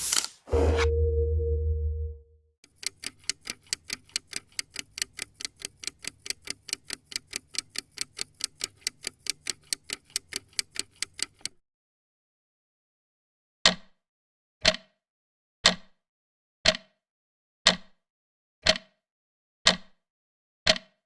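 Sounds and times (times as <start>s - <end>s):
clock ticking: 2.6s - 11.6s, 18.7s - 18.9s.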